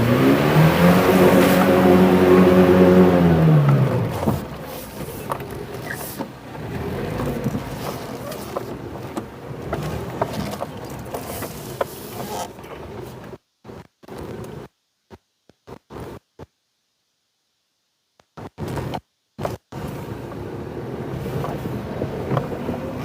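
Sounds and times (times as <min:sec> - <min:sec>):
engine revving hard: 0:00.0 - 0:04.2.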